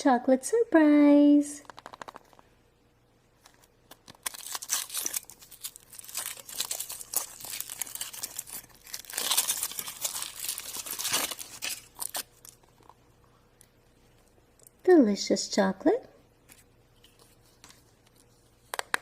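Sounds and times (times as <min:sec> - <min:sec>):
foil wrapper crinkling and tearing: 0:03.9 - 0:13.0.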